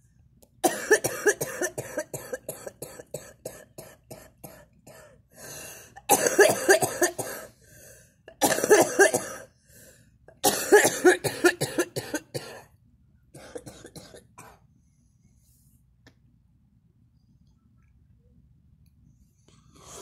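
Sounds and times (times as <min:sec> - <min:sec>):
girl coughing hard: 0:00.6 - 0:05.2, 0:06.0 - 0:07.5, 0:08.4 - 0:09.5, 0:10.4 - 0:12.7, 0:13.4 - 0:14.6.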